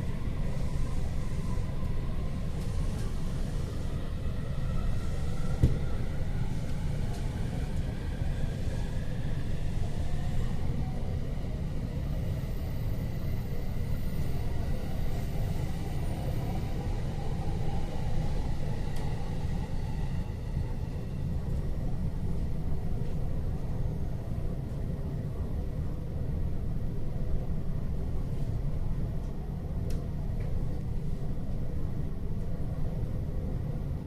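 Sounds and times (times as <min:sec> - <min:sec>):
train car low rumble: 0:00.0 - 0:34.0.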